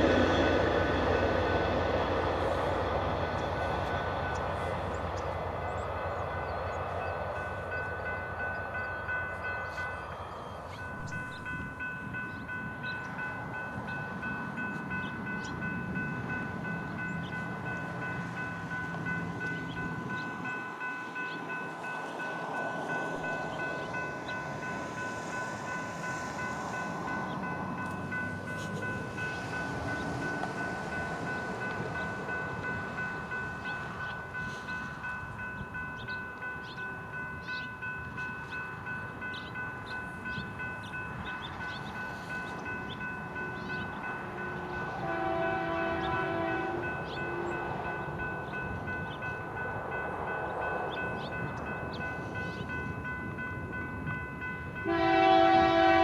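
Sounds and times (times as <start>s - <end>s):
crossing bell ringing: 0.0s - 56.0s
train rolling: 0.0s - 56.0s
train horn blast: 44.6s - 47.5s, 54.8s - 56.0s.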